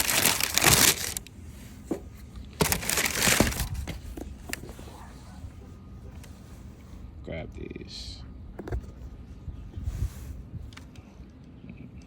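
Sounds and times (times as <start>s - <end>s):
packaging rustling and crinkling: 0.0s - 1.3s, 1.9s - 4.8s.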